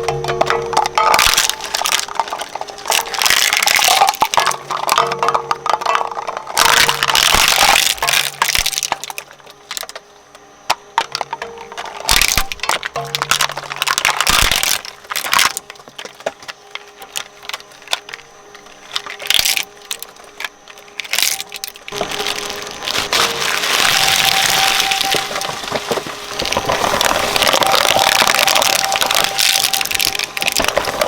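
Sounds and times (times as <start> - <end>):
shredder blades crunching: 0.0 - 31.0.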